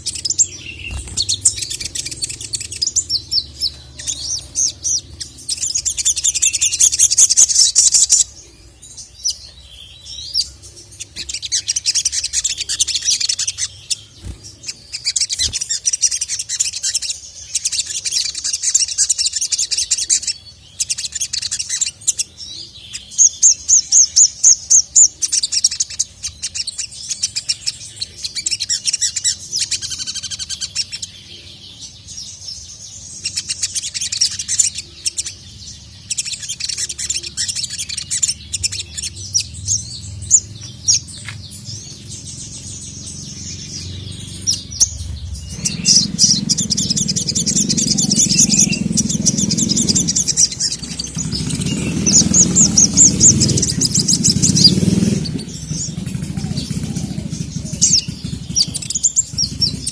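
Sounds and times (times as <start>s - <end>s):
sunbird chattering trills: 0.0s - 59.9s.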